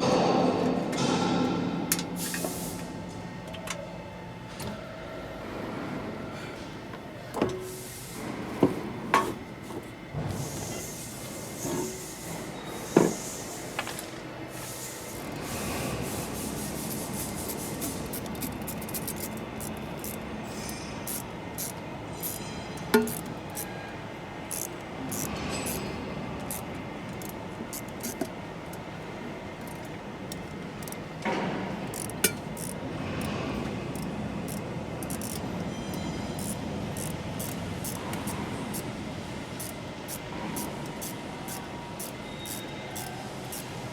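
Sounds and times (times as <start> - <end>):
steady background hum: 0.0 - 43.9.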